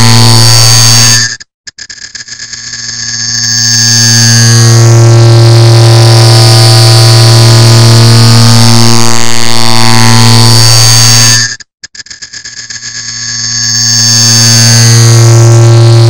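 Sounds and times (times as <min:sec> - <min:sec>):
distorted buzzing drone: 0:00.0 - 0:01.4, 0:02.5 - 0:11.6, 0:12.9 - 0:16.0.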